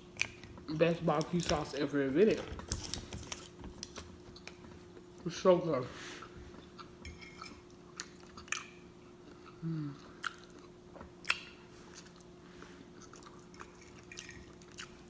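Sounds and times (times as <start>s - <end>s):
person humming: 9.6s - 10.1s.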